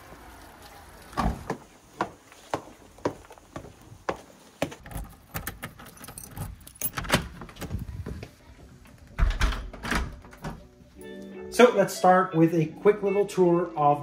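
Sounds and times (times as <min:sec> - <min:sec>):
keys jangling: 0:04.8 - 0:07.3.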